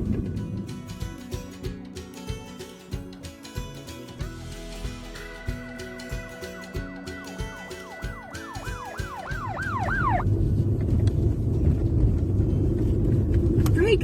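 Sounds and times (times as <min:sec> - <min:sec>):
car driving road rumble: 0:00.0 - 0:01.3, 0:08.1 - 0:14.0
background music with a beat: 0:00.0 - 0:10.2
swooping siren-like glide: 0:05.7 - 0:10.3.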